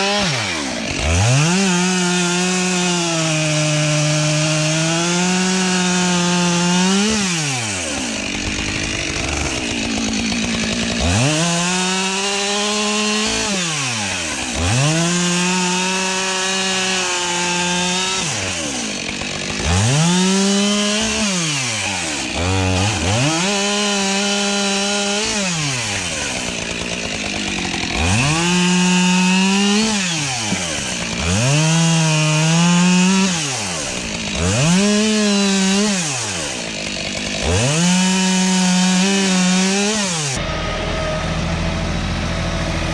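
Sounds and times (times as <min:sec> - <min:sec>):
chainsaw revving and cutting wood: 0:00.0 - 0:42.9.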